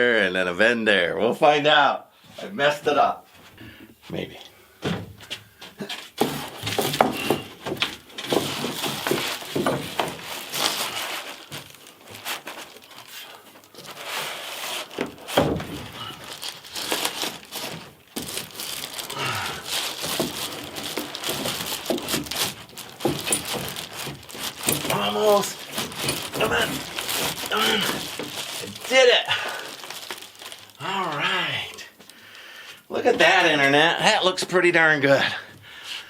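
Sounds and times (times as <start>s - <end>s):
conduit knocking and scraping: 4.8s - 10.9s, 20.0s - 28.7s.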